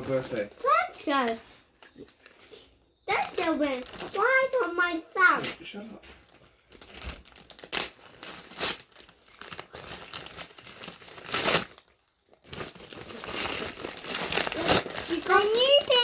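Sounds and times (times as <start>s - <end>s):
wrapping paper tearing and crumpling: 0.0s - 16.0s.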